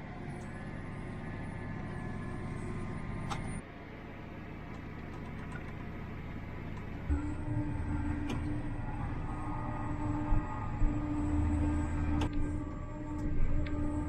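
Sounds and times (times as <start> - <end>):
farm vehicle engine rumble: 0.0 - 14.0.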